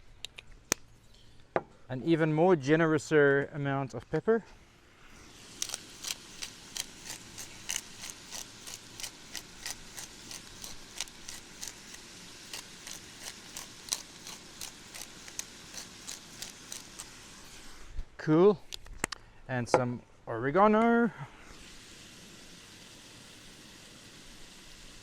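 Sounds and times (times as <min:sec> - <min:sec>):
pepper grinder clicking: 0:05.5 - 0:17.2.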